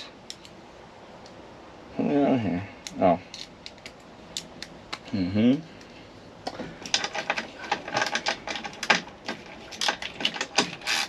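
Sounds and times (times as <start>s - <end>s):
metal and plastic parts rattling: 6.5s - 11.0s.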